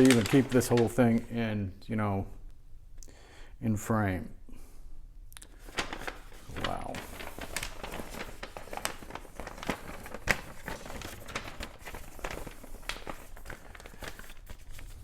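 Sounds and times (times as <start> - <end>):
packaging crinkling: 0.0 - 1.2, 5.6 - 15.0.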